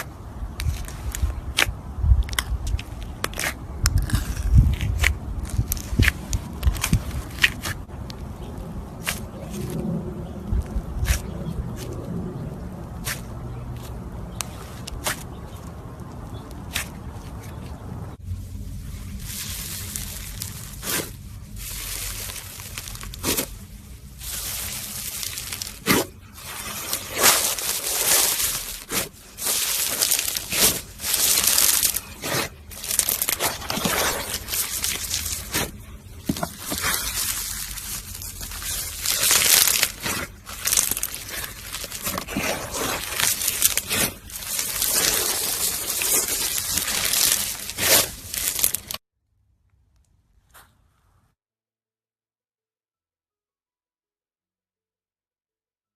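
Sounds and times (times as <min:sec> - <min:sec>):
slime crackling and popping: 0:00.6 - 0:09.8, 0:19.1 - 0:49.0.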